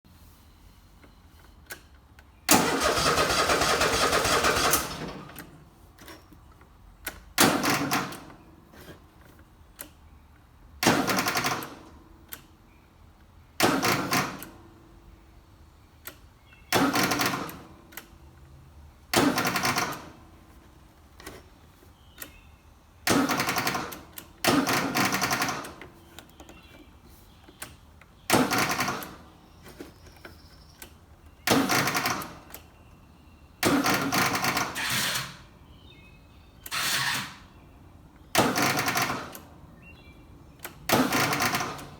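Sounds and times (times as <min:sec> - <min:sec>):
mower starter cranking engine: 0:02.5 - 0:06.2, 0:07.3 - 0:08.4, 0:10.8 - 0:12.0, 0:13.6 - 0:14.6, 0:16.7 - 0:18.1, 0:19.1 - 0:20.3, 0:23.0 - 0:26.6, 0:27.6 - 0:29.9, 0:30.8 - 0:32.8, 0:33.6 - 0:36.0, 0:36.6 - 0:37.6, 0:38.2 - 0:39.5, 0:40.6 - 0:41.9.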